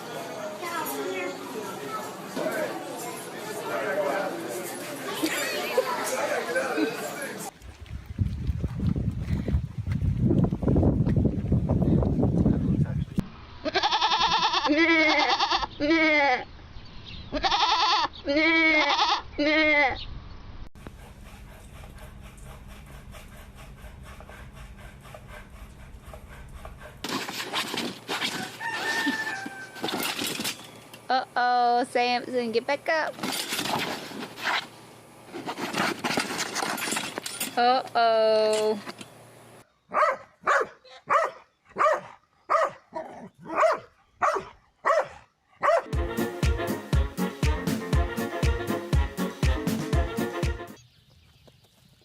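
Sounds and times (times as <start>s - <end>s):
goat bleating: 13.6s - 16.4s, 17.4s - 20.0s
rooster crowing: 28.2s - 30.1s
dog barking: 39.9s - 45.9s.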